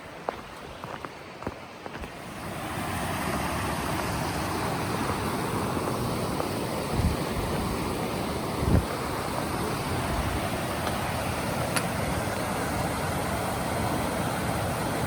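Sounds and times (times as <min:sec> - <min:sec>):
footsteps: 0:00.0 - 0:02.2
mountain creek rushing: 0:00.0 - 0:15.0.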